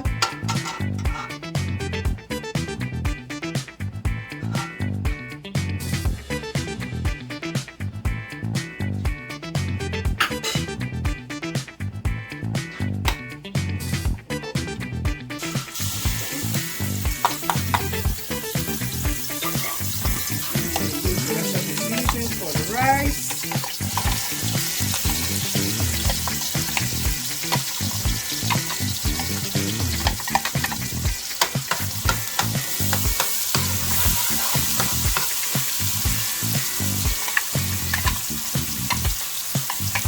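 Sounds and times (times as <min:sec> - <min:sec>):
spoon scraping and knocking pot: 0:00.0 - 0:01.4, 0:10.2 - 0:10.7, 0:16.6 - 0:18.2, 0:19.2 - 0:22.6, 0:23.2 - 0:35.8, 0:36.5 - 0:40.0
food sizzling in hot oil: 0:15.4 - 0:40.0.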